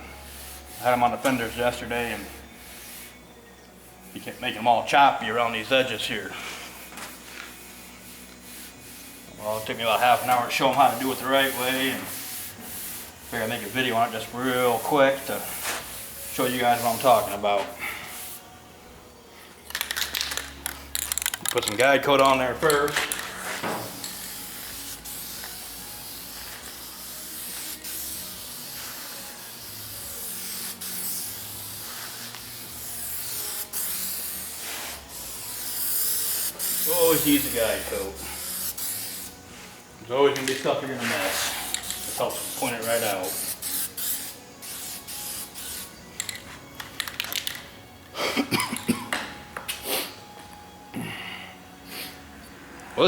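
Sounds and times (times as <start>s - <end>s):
aerosol can spraying: 0.2s - 3.2s, 6.4s - 18.6s, 22.4s - 47.6s.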